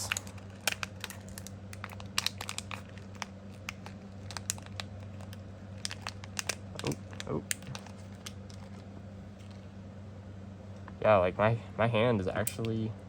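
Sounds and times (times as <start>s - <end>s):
plastic parts clicking and crinkling: 0.0s - 9.6s
steady low hum: 0.0s - 13.0s.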